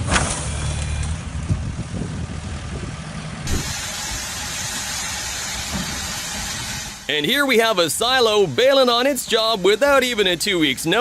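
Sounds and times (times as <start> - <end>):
vehicle engine running: 0.0 - 8.7
rough outdoor noise: 0.0 - 11.0.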